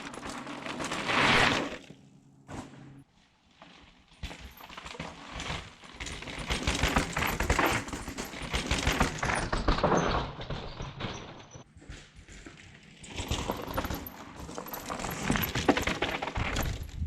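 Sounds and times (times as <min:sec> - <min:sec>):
dense clattering and crackling: 0:00.0 - 0:17.0.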